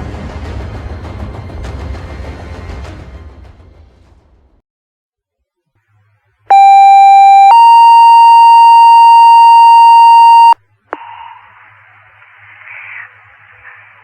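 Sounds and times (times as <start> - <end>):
two-tone radio paging tones: 6.5 - 10.6.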